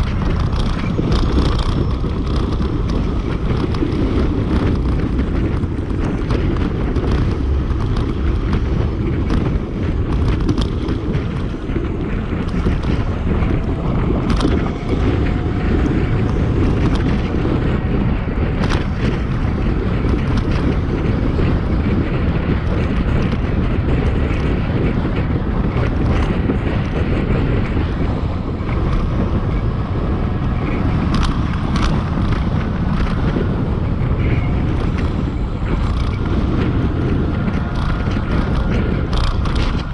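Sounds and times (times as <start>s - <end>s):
clicks and rattles: 0.0s - 17.9s, 30.4s - 33.4s, 34.2s - 39.9s
wind buffeting microphone: 0.0s - 39.9s.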